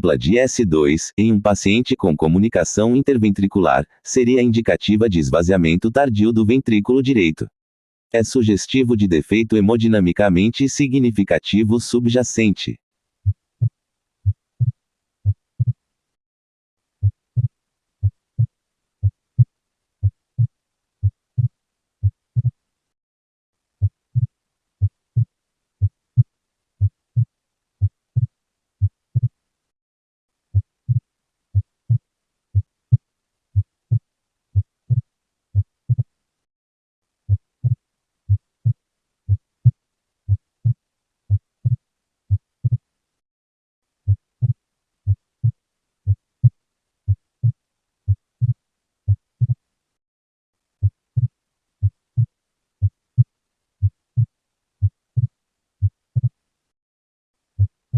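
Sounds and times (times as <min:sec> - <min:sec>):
heartbeat lub-dub: 0:13.2 - 0:15.8, 0:17.0 - 0:22.6, 0:23.8 - 0:29.3, 0:30.6 - 0:31.0, 0:34.6 - 0:35.0, 0:35.6 - 0:36.1, 0:37.3 - 0:42.8, 0:47.1 - 0:49.6, 0:50.8 - 0:56.3.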